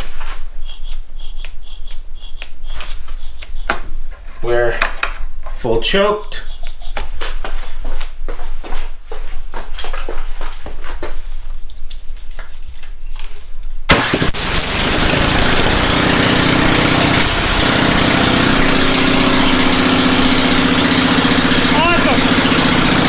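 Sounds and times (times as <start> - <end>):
small engine cranking and running: 13.9 - 23.0.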